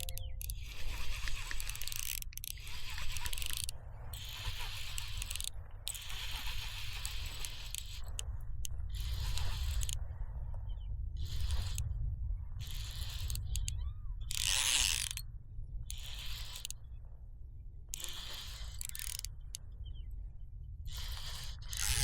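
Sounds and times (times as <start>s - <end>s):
fishing reel whirring and clicking: 0.0s - 10.2s, 11.2s - 11.9s, 12.6s - 16.9s, 17.9s - 20.0s, 20.8s - 22.0s
low rumble: 8.2s - 14.3s.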